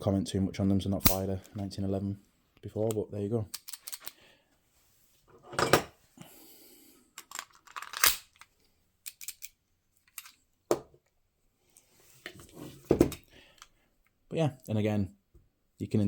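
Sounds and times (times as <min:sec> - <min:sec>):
metal clicks and knocks of pistols: 0:02.8 - 0:04.2, 0:07.2 - 0:10.4
pistol slide scraping: 0:03.6 - 0:04.2, 0:07.3 - 0:08.4.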